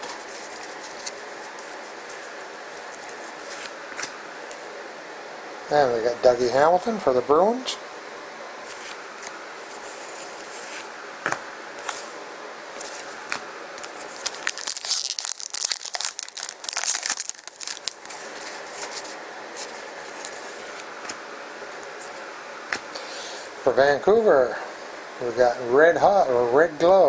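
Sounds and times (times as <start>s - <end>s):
foil wrapper crinkling and tearing: 12.8s - 20.4s.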